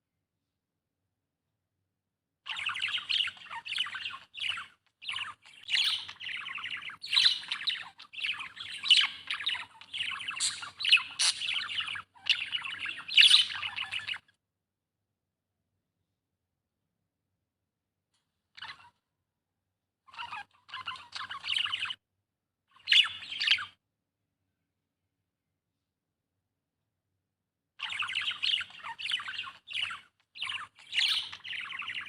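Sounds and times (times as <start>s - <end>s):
budgerigar chattering and warbling: 2.5s - 14.2s, 20.1s - 22.0s, 27.8s - 32.0s.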